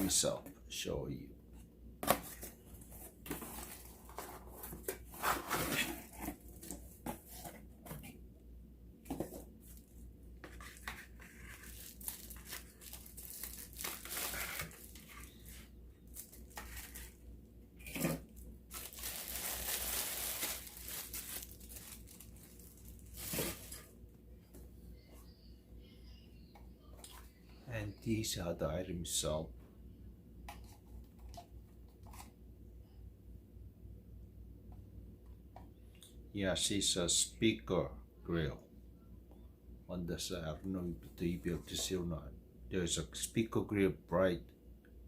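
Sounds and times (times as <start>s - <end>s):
packaging tearing and crinkling: 11.2s - 15.2s, 18.7s - 23.8s.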